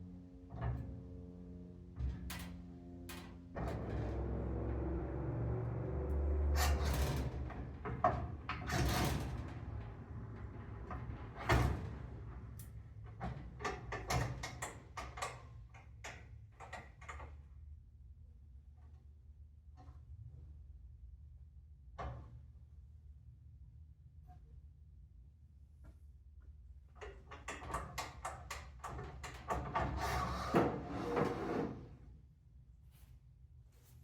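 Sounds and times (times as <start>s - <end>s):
long scraping slide: 30.0s - 31.8s.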